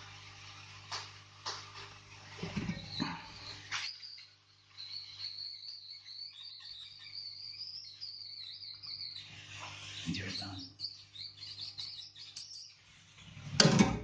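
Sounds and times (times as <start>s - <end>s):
animal chirping trill: 2.9s - 9.3s.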